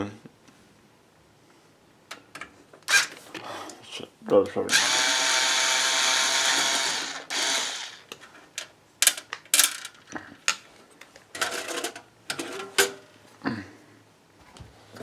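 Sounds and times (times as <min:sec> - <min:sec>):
cordless drill whirring: 0:04.7 - 0:08.1.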